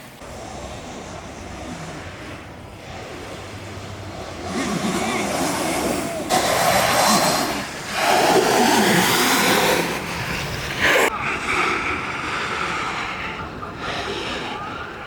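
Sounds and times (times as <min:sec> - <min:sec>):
wheels rolling on asphalt: 0:00.0 - 0:15.0
wind rushing over microphone: 0:00.0 - 0:15.0
loud scrape: 0:00.3 - 0:11.1.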